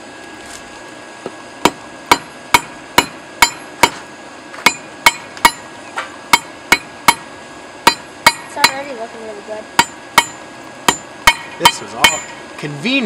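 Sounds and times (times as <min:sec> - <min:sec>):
hammer ringing on anvil: 0:01.7 - 0:04.0, 0:04.6 - 0:05.7, 0:06.3 - 0:07.3, 0:07.9 - 0:08.9, 0:09.8 - 0:12.4.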